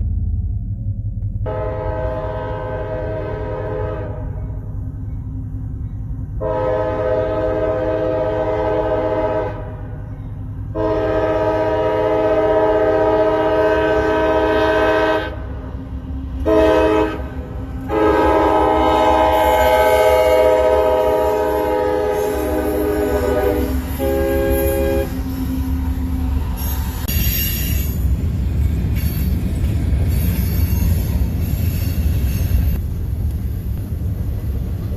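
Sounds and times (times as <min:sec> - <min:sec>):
passing train rumble: 0:00.0 - 0:34.9
locomotive horn blasts: 0:01.4 - 0:04.6, 0:06.4 - 0:10.0, 0:10.7 - 0:15.6, 0:16.4 - 0:25.4.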